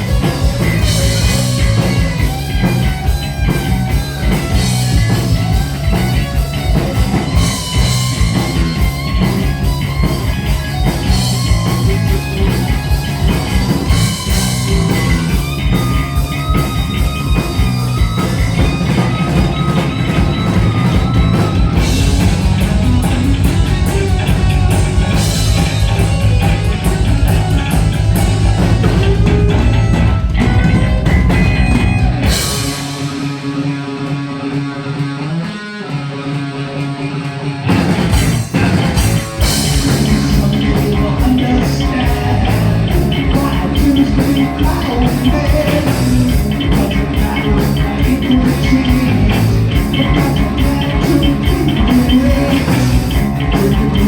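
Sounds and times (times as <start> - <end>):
bass guitar: 0.0 - 54.0
distorted electric guitars: 0.0 - 54.0
drum kit: 0.0 - 54.0.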